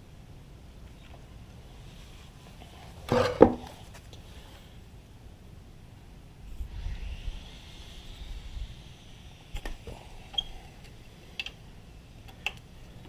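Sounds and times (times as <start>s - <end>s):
low rumble: 6.3s - 11.1s.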